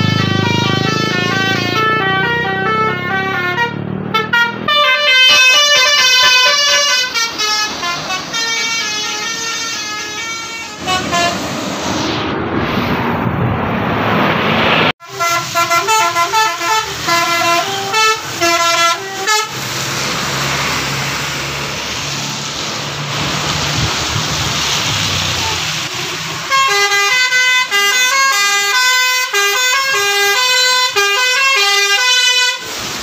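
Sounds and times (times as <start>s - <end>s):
multi-tone air horn melody: 0.0s - 11.6s, 15.0s - 19.6s, 26.4s - 32.8s
road noise: 0.0s - 33.0s.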